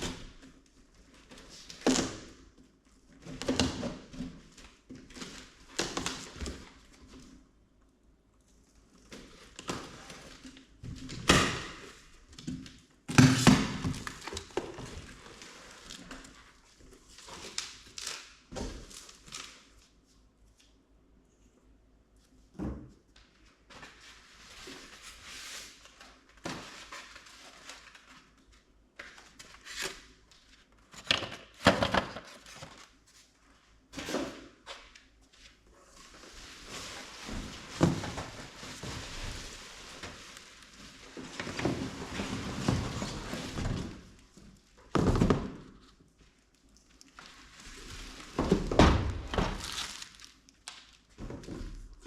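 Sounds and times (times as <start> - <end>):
cardboard rustling and scraping: 34.0 - 46.0.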